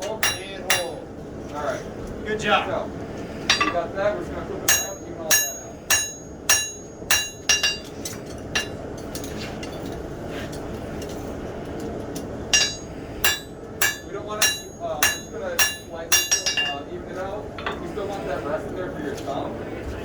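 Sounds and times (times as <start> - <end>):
hammer ringing on anvil: 0.0 - 1.0, 3.5 - 3.9, 4.7 - 8.8, 12.5 - 16.9.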